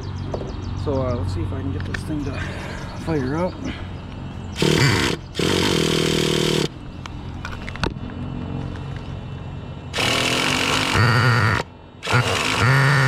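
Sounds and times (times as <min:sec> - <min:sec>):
electric starter spinning small engine: 0:04.6 - 0:06.8, 0:09.9 - 0:13.0.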